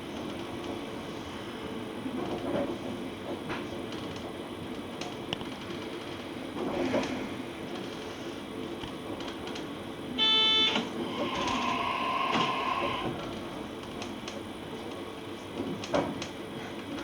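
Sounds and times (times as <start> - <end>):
train hum: 0.0 - 17.0
train horn blast: 10.2 - 13.2.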